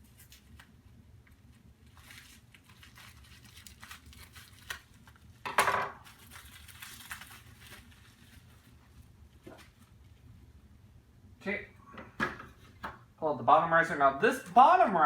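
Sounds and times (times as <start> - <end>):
hands rustling computer parts: 0.0 - 10.2.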